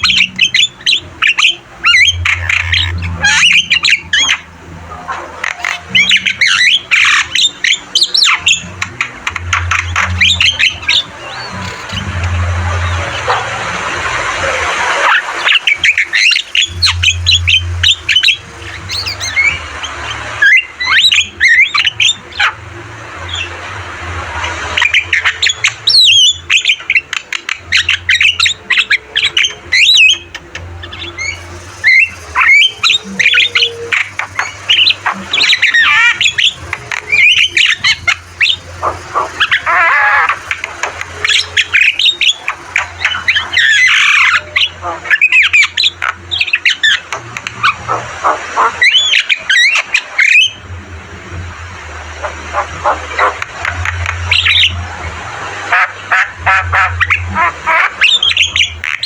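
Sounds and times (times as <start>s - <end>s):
myna squawks and whistles: 14.4s - 21.8s.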